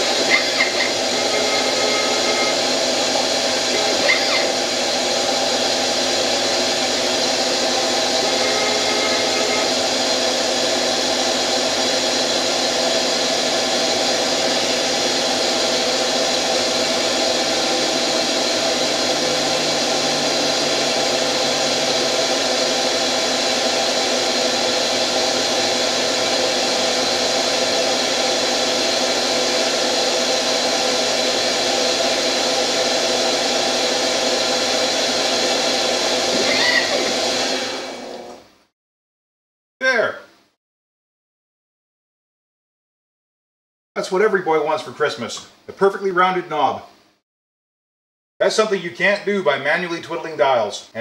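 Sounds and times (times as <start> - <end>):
lathe machine hum: 0.0 - 38.5
whining motor tones: 0.0 - 38.5.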